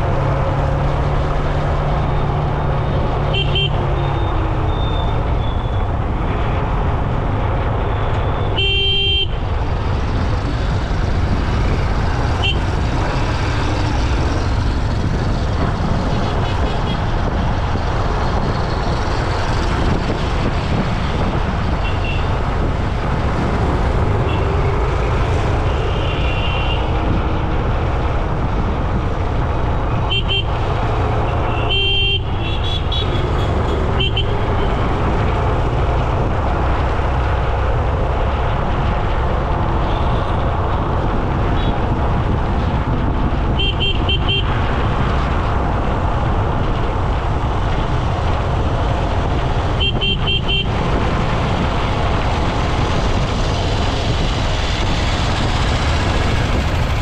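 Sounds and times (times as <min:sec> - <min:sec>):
road traffic rumble: 0:00.0 - 0:57.0
vehicle horns honking: 0:03.3 - 0:05.0, 0:08.4 - 0:09.4, 0:12.4 - 0:12.7, 0:31.5 - 0:34.3, 0:49.8 - 0:50.7.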